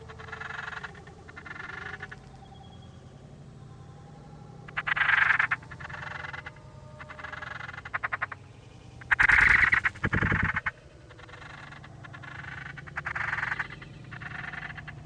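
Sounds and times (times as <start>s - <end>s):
rasping animal calls: 0.0s - 2.2s, 4.7s - 8.4s, 9.0s - 15.0s.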